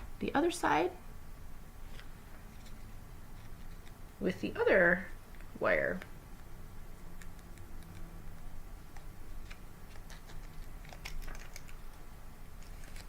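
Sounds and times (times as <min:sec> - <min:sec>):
tape and paper clicks and crinkles: 0:01.9 - 0:04.0, 0:08.9 - 0:13.0.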